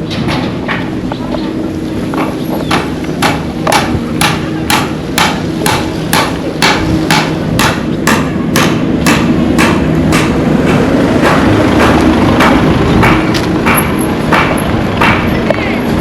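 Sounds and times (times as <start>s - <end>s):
sharp knocks or slaps: 2.7s - 15.3s.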